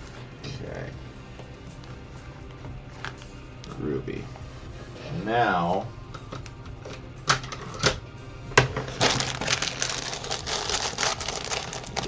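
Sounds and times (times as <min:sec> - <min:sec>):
plastic pieces clattering on tray: 0:08.7 - 0:12.0.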